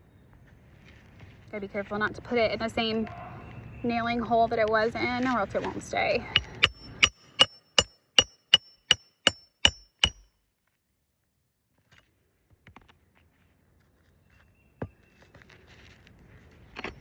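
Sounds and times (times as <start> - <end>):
hammer striking roofing nail: 6.4 - 10.2.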